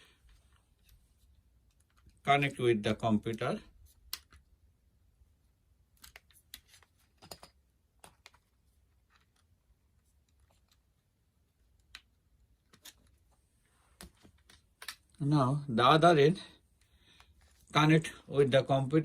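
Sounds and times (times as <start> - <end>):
plastic connectors clicking and tapping: 3.2 - 4.5.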